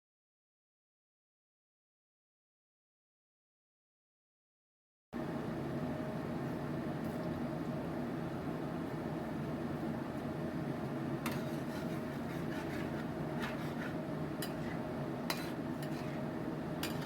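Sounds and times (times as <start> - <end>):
steady hum: 5.2 - 17.0
metal utensil clinking cookware: 16.8 - 17.0.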